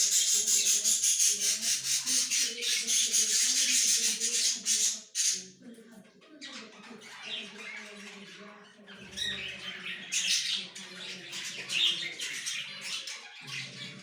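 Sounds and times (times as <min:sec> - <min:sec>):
birds squawking and chattering: 0:00.0 - 0:14.0.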